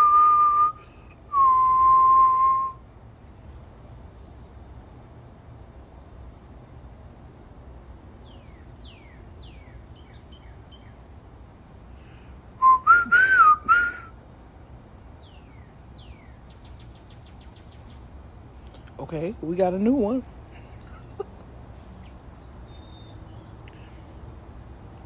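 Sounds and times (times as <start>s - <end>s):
person whistling: 0.0s - 2.8s, 12.6s - 14.1s
wild birds calling: 0.0s - 4.9s, 6.0s - 25.0s.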